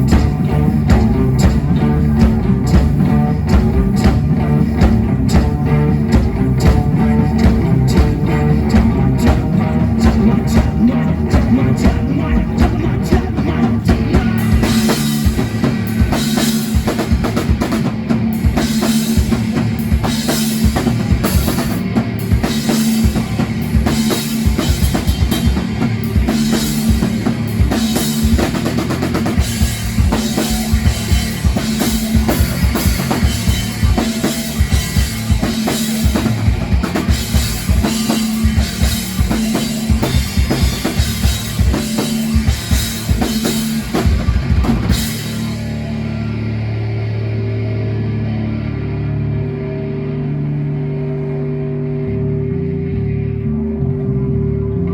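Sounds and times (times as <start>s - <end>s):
rock band playing: 0.0s - 54.9s
sustained bass line: 0.0s - 54.9s.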